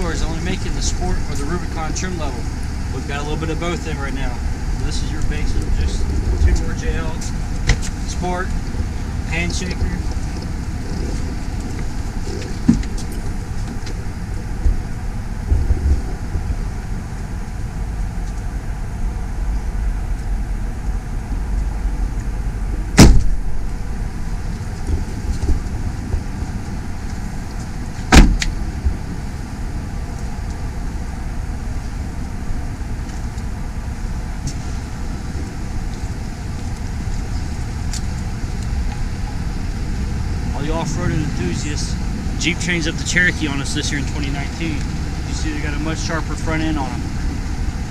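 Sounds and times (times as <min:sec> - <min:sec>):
steady low rumble: 0:00.0 - 0:47.9
car doors slamming: 0:22.9 - 0:23.6, 0:27.9 - 0:28.6.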